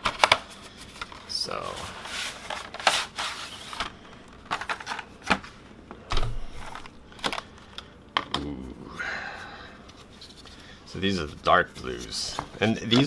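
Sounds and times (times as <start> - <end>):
packaging rustling: 0.0 - 5.5.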